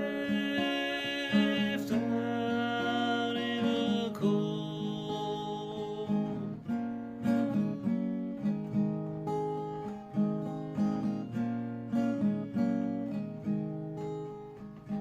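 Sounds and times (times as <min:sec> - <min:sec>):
person singing: 0:00.0 - 0:06.6
acoustic guitar strummed slowly: 0:00.0 - 0:15.0.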